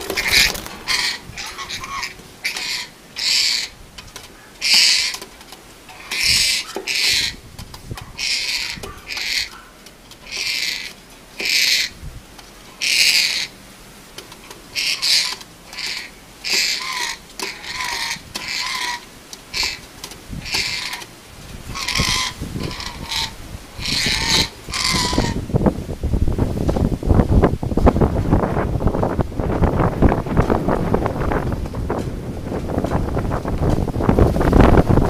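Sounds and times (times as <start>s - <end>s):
bird hissing calls: 0.2s - 3.8s, 4.4s - 5.2s, 6.0s - 7.4s, 8.2s - 12.0s, 12.8s - 13.6s, 14.7s - 21.1s, 21.7s - 25.4s.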